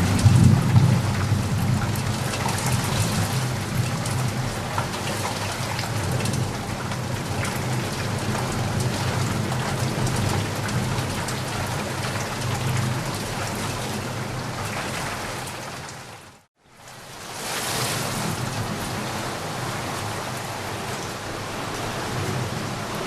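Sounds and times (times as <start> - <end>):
heavy rain hiss: 16.9 - 23.0.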